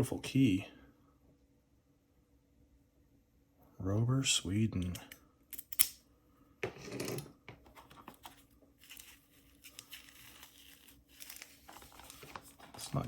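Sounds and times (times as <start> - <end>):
packaging rustling and crinkling: 7.7 - 13.0.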